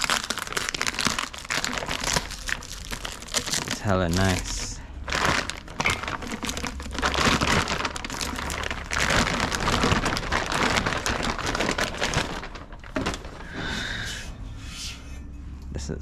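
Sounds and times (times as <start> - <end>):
plastic packaging crinkling: 0.0 - 13.5.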